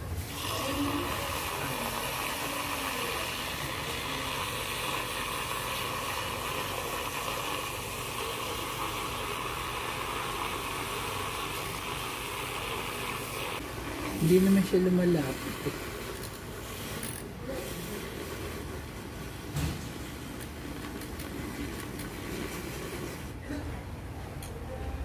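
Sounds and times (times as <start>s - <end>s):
handheld electric mixer running: 0.3s - 19.0s.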